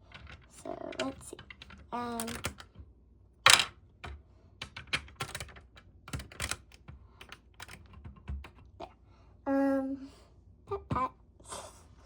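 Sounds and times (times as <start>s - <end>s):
plastic bricks clicking and clattering: 0.0s - 2.8s, 3.4s - 8.5s.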